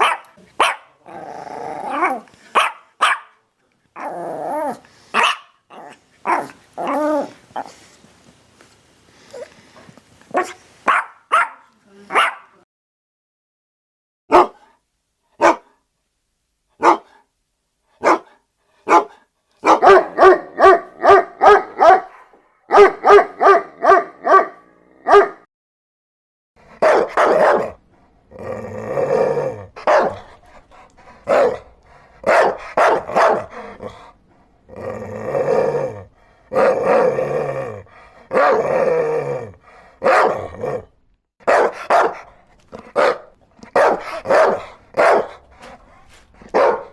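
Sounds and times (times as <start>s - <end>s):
dog barking: 0.0s - 1.0s, 1.9s - 3.4s, 5.1s - 5.6s, 6.2s - 7.0s, 10.3s - 12.6s, 14.3s - 14.8s, 15.4s - 15.8s, 16.8s - 17.2s, 18.0s - 25.5s, 26.7s - 27.8s, 29.8s - 30.3s, 31.2s - 33.6s, 38.3s - 38.6s, 40.0s - 40.5s, 41.4s - 45.5s, 46.4s - 46.9s
deeper dog barking: 0.0s - 1.1s, 1.9s - 3.4s, 5.2s - 5.6s, 10.4s - 12.6s, 14.3s - 14.7s, 15.4s - 15.8s, 16.8s - 17.2s, 18.0s - 25.4s, 26.7s - 27.9s, 29.2s - 30.5s, 31.1s - 34.0s, 38.3s - 38.8s, 40.0s - 45.8s, 46.4s - 46.9s.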